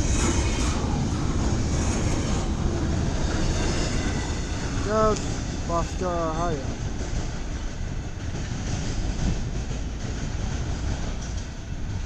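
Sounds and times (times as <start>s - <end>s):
freight train rumbling past: 0.0s - 12.0s.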